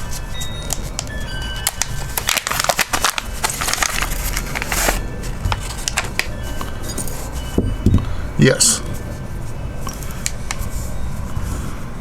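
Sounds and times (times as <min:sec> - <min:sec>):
packaging crinkling: 0:00.0 - 0:06.4.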